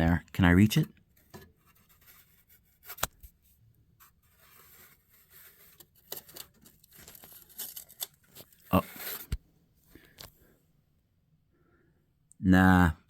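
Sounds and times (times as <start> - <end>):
hands scraping and rubbing: 1.2 - 3.4, 4.0 - 9.4.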